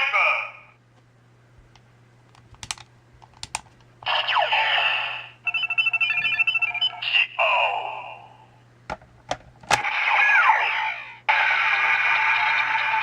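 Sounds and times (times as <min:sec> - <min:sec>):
electronic jingle of beeps: 0:05.5 - 0:07.0.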